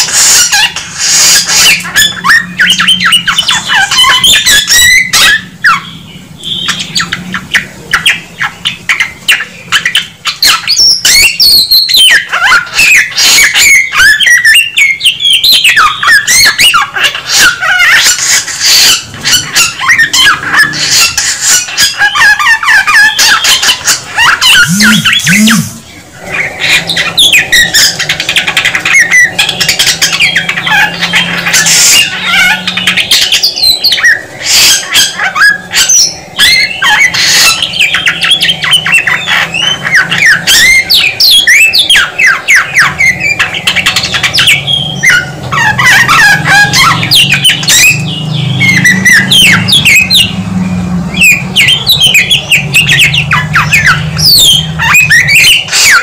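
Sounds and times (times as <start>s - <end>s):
bird singing whistled phrases: 22.2s - 26.0s.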